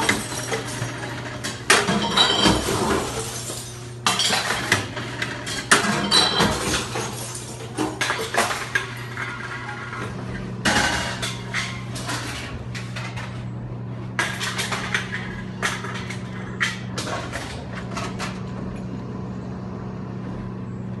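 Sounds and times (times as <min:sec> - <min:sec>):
glass bottles clattering and smashing: 0:00.0 - 0:10.0
machine motor hum: 0:08.5 - 0:21.0.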